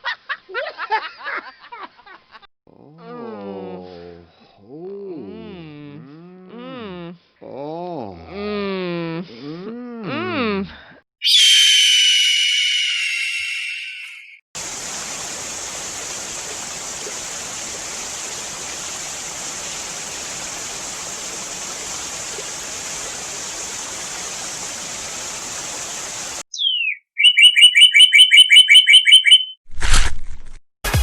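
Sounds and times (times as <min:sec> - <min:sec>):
bird whistling and chirping: 0:11.2 - 0:14.4, 0:26.5 - 0:29.6
rushing falling water: 0:14.6 - 0:26.4.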